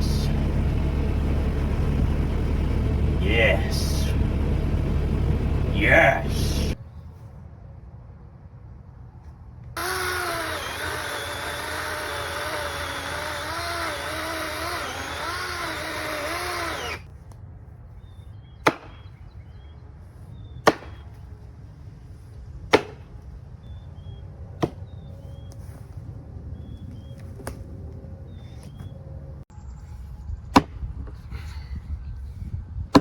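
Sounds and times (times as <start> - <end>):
electric chainsaw cutting log: 0.0 - 6.8, 9.8 - 17.1
axe chopping wood: 18.6 - 19.0, 20.6 - 21.1, 22.7 - 23.1, 24.6 - 24.8.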